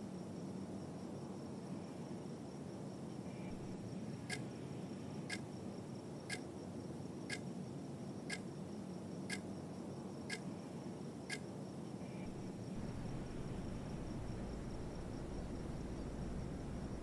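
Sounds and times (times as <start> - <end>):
steady low hiss: 0.6 - 17.0
faint high whine: 6.6 - 17.0.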